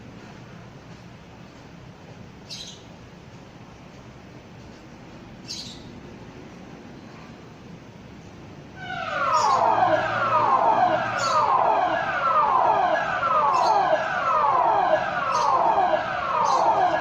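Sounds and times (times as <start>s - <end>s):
emergency warning siren: 8.8s - 17.0s.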